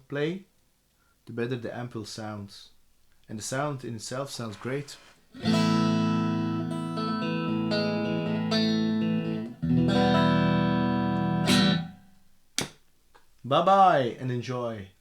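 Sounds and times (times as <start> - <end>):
electric guitar chords: 5.4 - 12.1.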